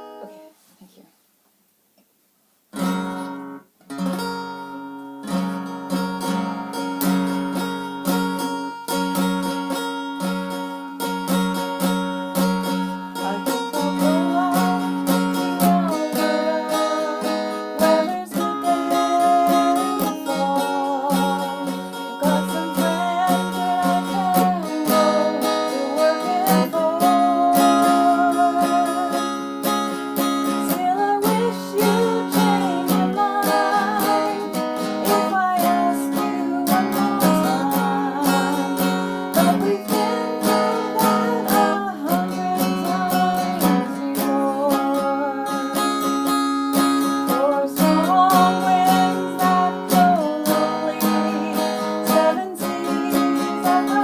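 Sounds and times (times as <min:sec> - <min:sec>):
acoustic guitar strumming: 0:00.0 - 0:00.6, 0:02.7 - 0:54.0
person singing: 0:12.4 - 0:54.0.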